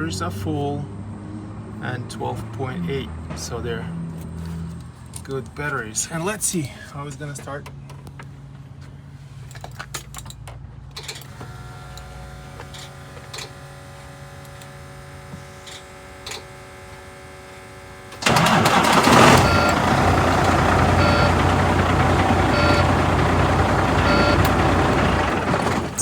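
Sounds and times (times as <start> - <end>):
diesel engine cranking and starting: 18.0 - 26.0
short beep: 19.4 - 19.8, 21.0 - 24.6.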